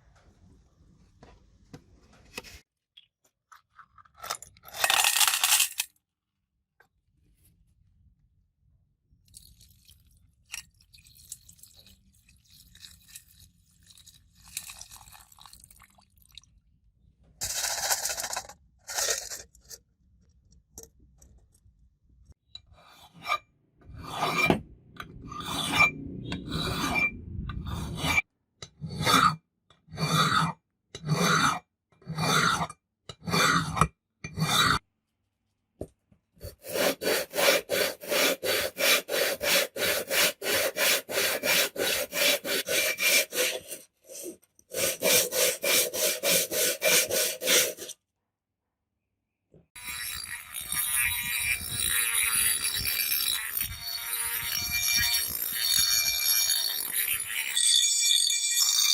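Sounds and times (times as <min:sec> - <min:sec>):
hand tool scraping a surface: 0:36.4 - 0:48.0.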